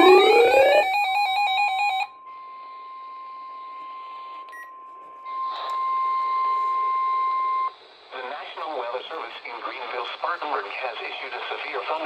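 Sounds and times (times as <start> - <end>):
rapid alternating data tones: 0.0 - 0.9
steady alarm tone: 0.0 - 2.2.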